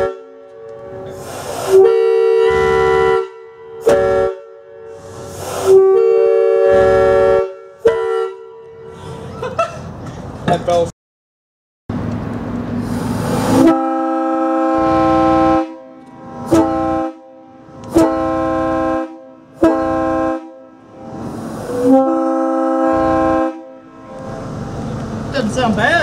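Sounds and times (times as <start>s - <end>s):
locomotive air horn blasts: 0.0s - 9.2s, 13.3s - 24.4s
hiss of compressed air: 1.1s - 1.8s, 5.0s - 5.8s.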